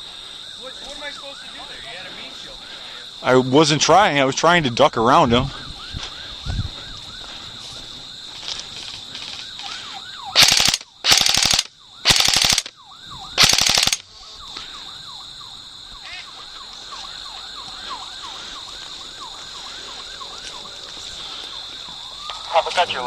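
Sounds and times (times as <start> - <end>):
airsoft gun full-auto bursts: 10.4 - 12.7, 13.4 - 14.0.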